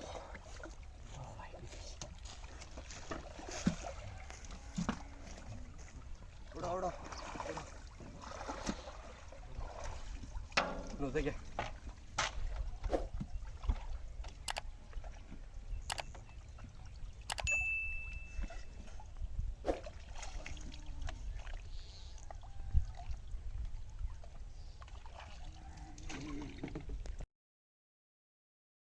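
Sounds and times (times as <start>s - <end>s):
light water sounds: 0.0s - 27.2s
brief ringing tone: 17.3s - 18.9s.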